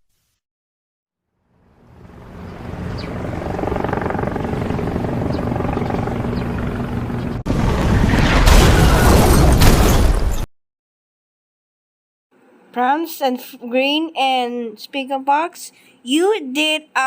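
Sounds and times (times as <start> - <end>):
low mechanical drone: 1.4 - 7.4.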